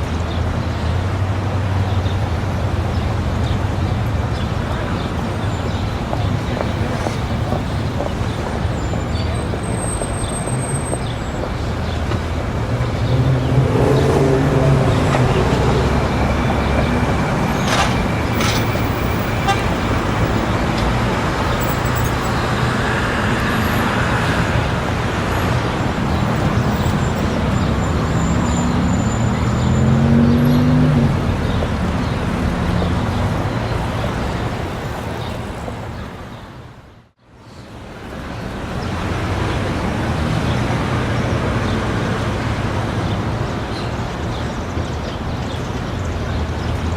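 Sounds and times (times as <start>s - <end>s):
crowd of people: 0.0s - 29.4s
road traffic: 0.0s - 46.9s.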